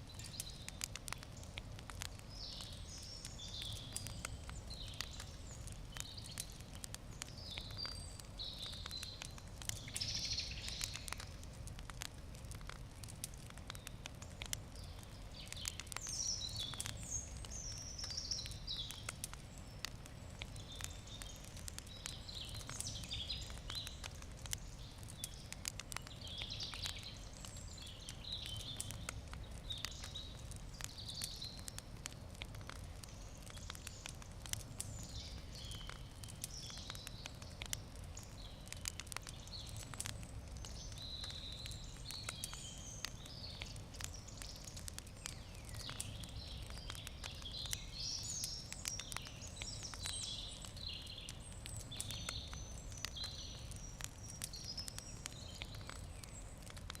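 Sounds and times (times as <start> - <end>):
campfire crackling and popping: 0.0 - 57.0
birds chirping: 2.1 - 11.2, 13.6 - 31.8, 33.0 - 56.8.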